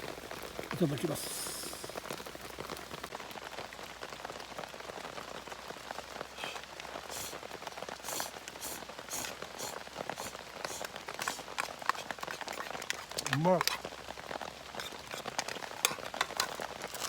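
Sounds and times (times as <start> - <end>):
steady rain falling: 0.0 - 17.0
short bright hissing sounds: 6.4 - 7.4, 8.0 - 12.1.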